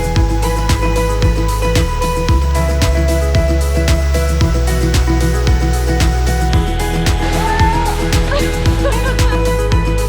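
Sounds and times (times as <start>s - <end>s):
held synth tones: 0.0s - 9.9s
bass drum beat: 0.0s - 10.0s.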